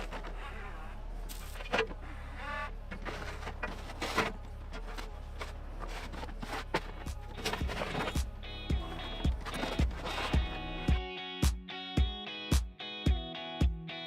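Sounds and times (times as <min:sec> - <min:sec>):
small diesel engine running: 0:00.0 - 0:10.9
bucket knocking and scraping ground: 0:02.9 - 0:10.7.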